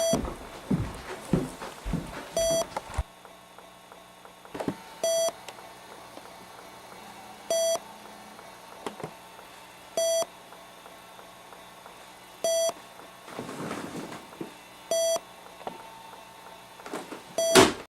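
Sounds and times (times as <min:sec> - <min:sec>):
electronic beep: 0:02.4 - 0:02.7, 0:07.5 - 0:07.8, 0:14.9 - 0:15.2.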